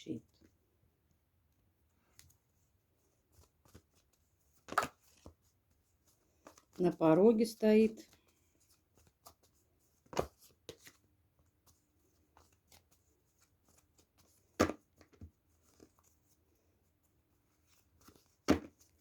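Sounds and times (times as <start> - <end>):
cards being shuffled: 3.3 - 5.4, 6.4 - 6.8.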